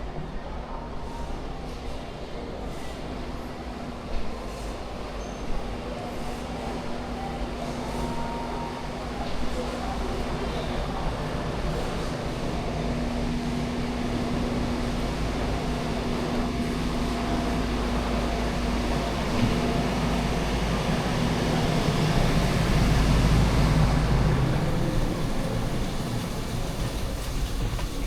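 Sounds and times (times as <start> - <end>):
ship machinery rumble and hum: 9.7 - 28.0.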